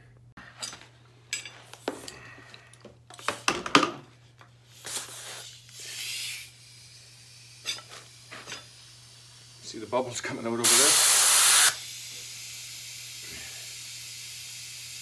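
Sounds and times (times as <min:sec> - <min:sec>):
compressed air hissing into tire: 0:04.7 - 0:15.0.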